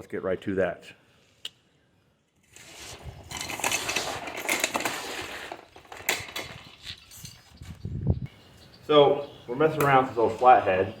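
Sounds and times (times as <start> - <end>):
metallic clinking and rattling: 3.3 - 7.6.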